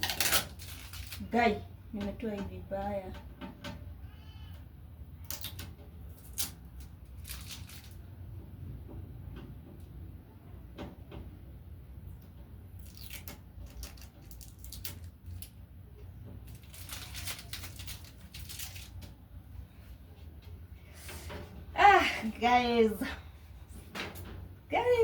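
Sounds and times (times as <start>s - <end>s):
packaging rustling and crinkling: 0.0s - 1.5s, 5.4s - 8.0s, 12.8s - 15.6s, 16.4s - 19.2s.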